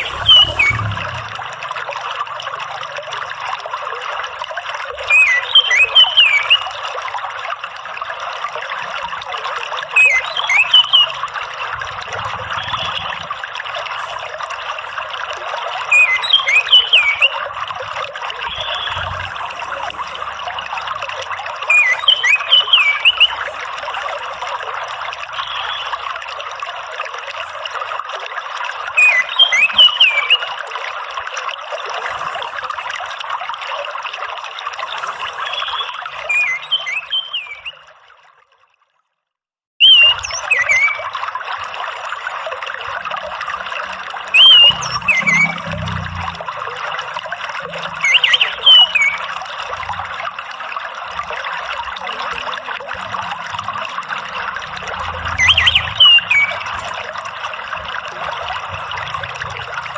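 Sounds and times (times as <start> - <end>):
thrush calling: 0.0 - 1.6, 5.0 - 6.8, 9.9 - 15.1, 15.8 - 17.5, 21.6 - 23.8, 28.9 - 30.5, 35.0 - 37.8, 39.8 - 41.1, 44.3 - 45.8, 47.7 - 49.6, 55.0 - 59.9
trickling water: 0.0 - 59.9.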